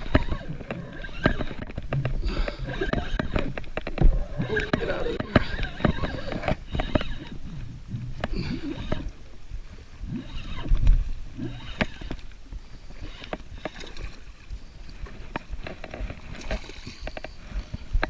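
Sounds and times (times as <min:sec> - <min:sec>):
gear knocking against boat hull: 0:00.0 - 0:09.1.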